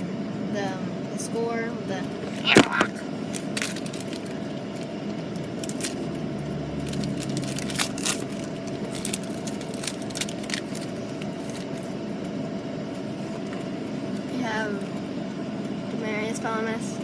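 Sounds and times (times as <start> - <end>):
steady background hum: 0.0 - 17.0
wrapper crinkling: 2.3 - 4.4, 5.6 - 6.1, 6.8 - 11.9.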